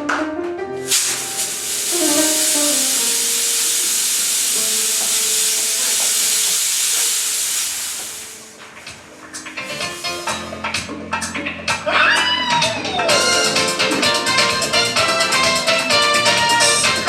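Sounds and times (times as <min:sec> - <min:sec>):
loud hiss of escaping gas: 0:00.8 - 0:10.8
faint music: 0:08.0 - 0:17.0.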